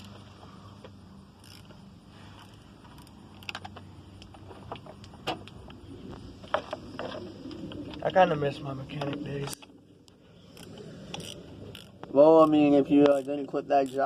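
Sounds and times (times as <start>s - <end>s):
steady low hum: 0.0s - 14.0s
metallic clicks of hand tools: 10.5s - 14.0s.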